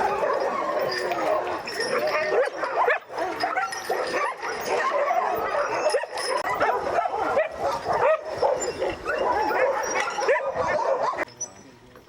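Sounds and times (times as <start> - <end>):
sled dogs yipping and howling: 0.0 - 11.3.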